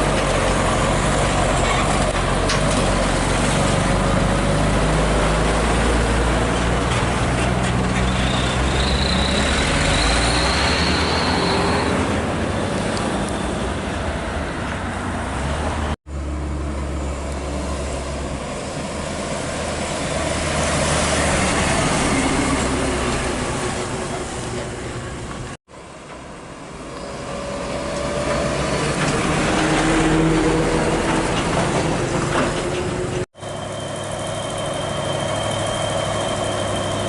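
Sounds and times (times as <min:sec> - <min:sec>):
heavy diesel engines running: 0:00.0 - 0:37.0
traffic noise: 0:00.0 - 0:37.0.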